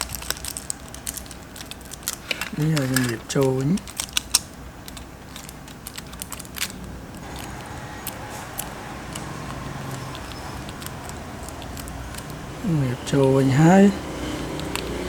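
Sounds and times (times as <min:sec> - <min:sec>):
small tools clicking and tapping: 0:00.0 - 0:13.5, 0:14.2 - 0:15.0
steady hum: 0:04.5 - 0:15.0.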